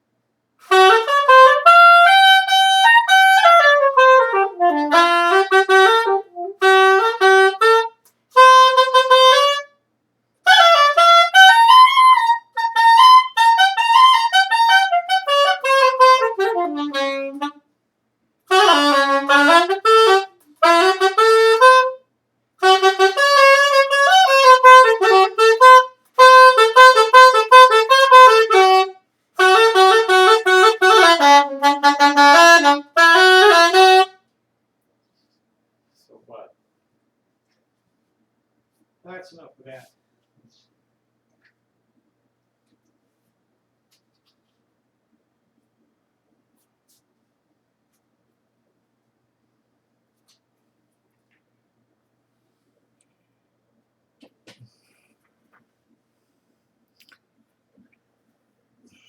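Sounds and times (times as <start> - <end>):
solo wind instrument melody: 0.6 - 9.7, 10.5 - 17.6, 18.5 - 22.0, 22.6 - 34.2.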